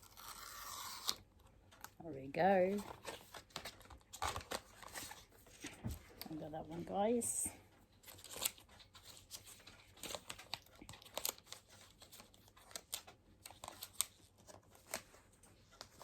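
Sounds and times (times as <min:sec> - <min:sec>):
packaging crinkling and tearing: 0:02.7 - 0:06.2, 0:08.0 - 0:16.0.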